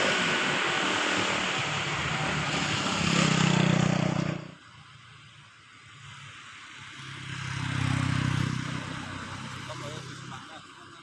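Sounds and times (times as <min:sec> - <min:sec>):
faint background traffic: 0:00.0 - 0:11.0
road noise: 0:00.0 - 0:11.0
vehicle engine hum: 0:00.0 - 0:11.0.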